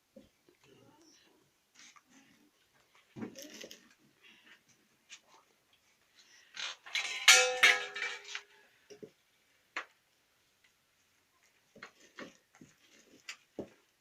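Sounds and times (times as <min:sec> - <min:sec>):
dishes clattering: 0:06.9 - 0:08.4.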